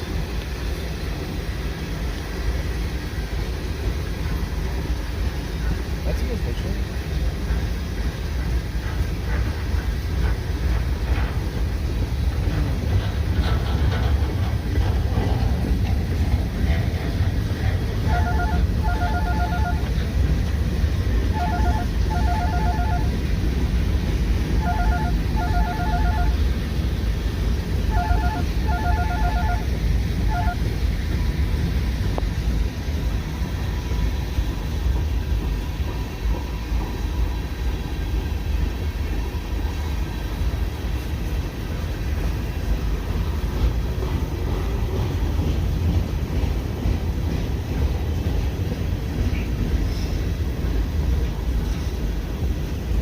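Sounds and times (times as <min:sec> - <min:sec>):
steady low rumble: 0:00.0 - 0:53.0
phone ringing with warbling ring: 0:18.1 - 0:19.9, 0:21.3 - 0:23.1, 0:24.6 - 0:26.4, 0:27.9 - 0:29.7, 0:30.3 - 0:30.6.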